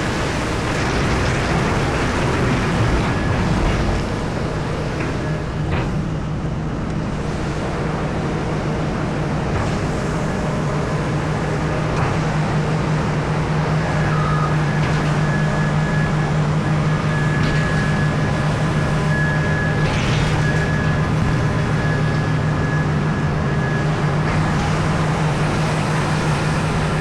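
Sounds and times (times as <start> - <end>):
diesel machinery engine drone: 0.0 - 27.0
faint high whine: 13.4 - 27.0.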